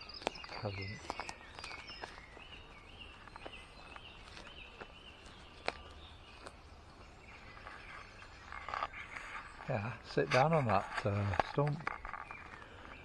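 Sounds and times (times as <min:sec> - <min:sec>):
sharp clicks and snaps: 0:00.0 - 0:02.6, 0:03.2 - 0:06.6
songbird singing faintly: 0:00.0 - 0:13.0.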